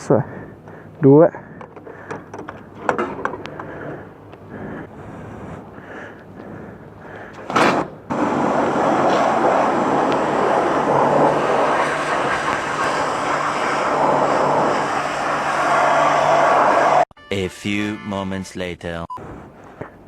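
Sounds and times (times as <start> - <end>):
high-pressure water jet spraying: 8.1 - 17.0.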